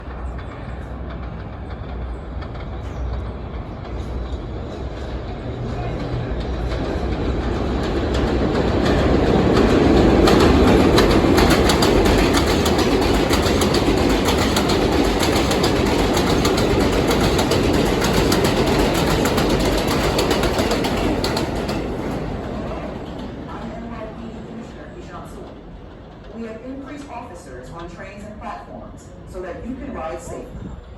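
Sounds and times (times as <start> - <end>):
subway train rumbling: 0.0 - 30.9
wheels clicking over rail joints: 0.1 - 24.7.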